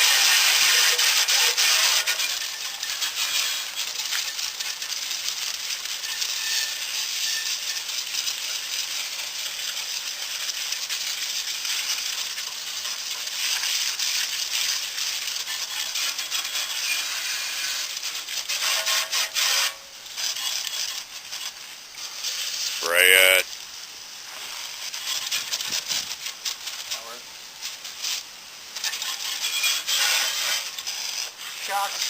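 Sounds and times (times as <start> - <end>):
hand sanding metal frame: 18.5 - 19.8.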